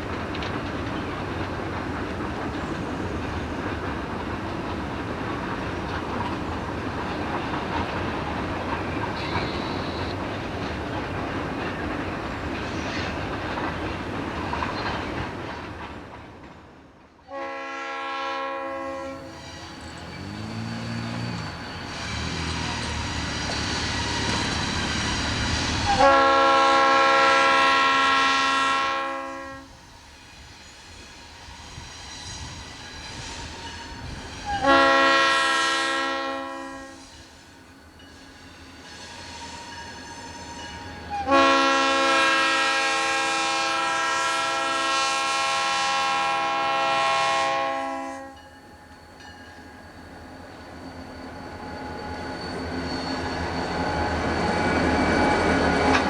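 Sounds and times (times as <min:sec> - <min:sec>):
passing train rumble: 0:00.0 - 0:56.0
locomotive air horn blasts: 0:17.3 - 0:19.4, 0:25.9 - 0:29.8, 0:34.5 - 0:37.1, 0:41.1 - 0:48.4.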